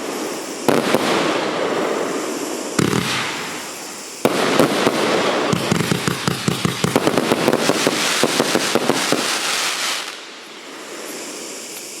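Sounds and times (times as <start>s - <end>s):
firework cake firing shots: 2.8s - 10.2s.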